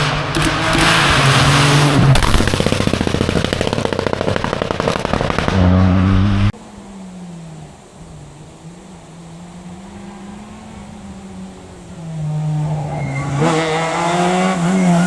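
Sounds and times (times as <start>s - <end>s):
exhaust popping and crackling: 0.0s - 6.6s
rally car engine at full throttle: 0.0s - 15.0s.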